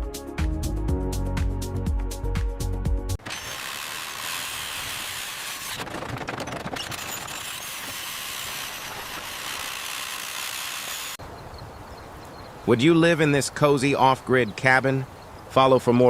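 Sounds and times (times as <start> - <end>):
construction tool noise: 3.2 - 11.2.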